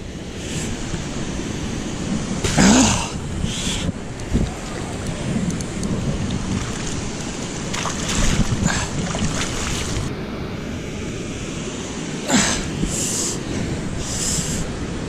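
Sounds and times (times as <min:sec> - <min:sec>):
wind buffeting microphone: 0:00.0 - 0:11.6
moving water rumble: 0:00.0 - 0:15.0
water splashes: 0:04.3 - 0:10.1.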